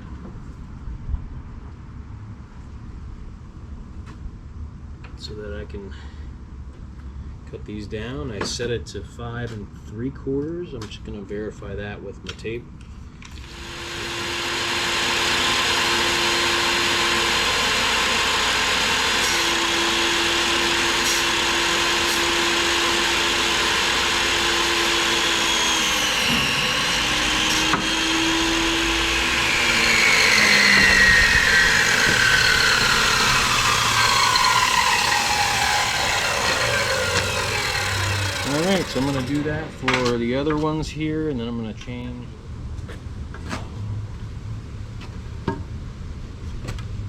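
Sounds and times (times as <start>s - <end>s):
table saw cutting wood: 13.4s - 40.7s
falling whine: 13.4s - 41.0s.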